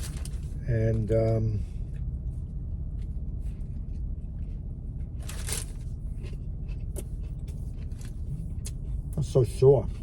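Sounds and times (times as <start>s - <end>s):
paper wrapper rustling: 0.0s - 0.5s, 5.2s - 5.8s
steady low rumble: 0.0s - 10.0s
chewing: 1.8s - 10.0s.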